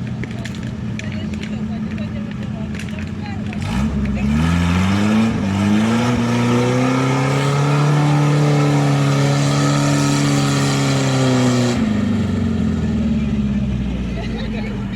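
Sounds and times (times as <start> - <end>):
engine revving hard: 3.6 - 13.9.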